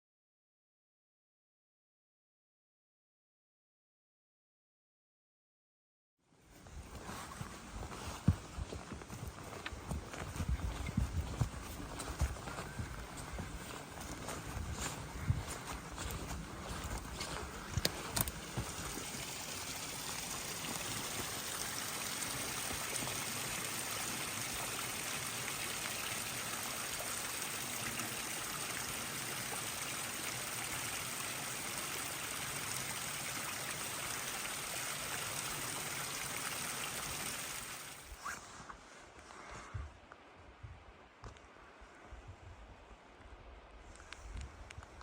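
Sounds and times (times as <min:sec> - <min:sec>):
running water rushing: 0:06.6 - 0:38.2.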